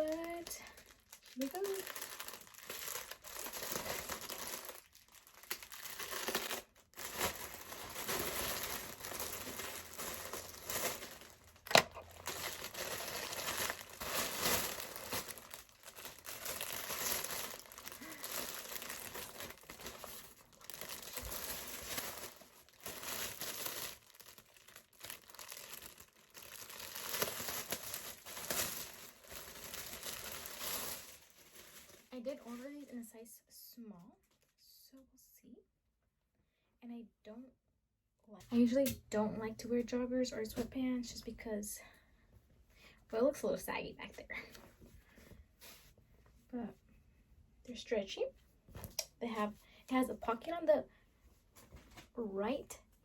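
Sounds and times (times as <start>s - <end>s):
packaging crinkling and rustling: 0.0s - 33.0s
packaging tearing: 1.1s - 32.0s.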